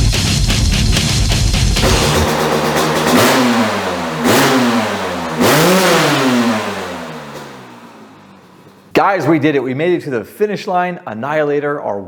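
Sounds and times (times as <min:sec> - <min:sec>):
heavy metal music: 0:00.0 - 0:06.9
two-stroke engine revving: 0:01.0 - 0:08.9.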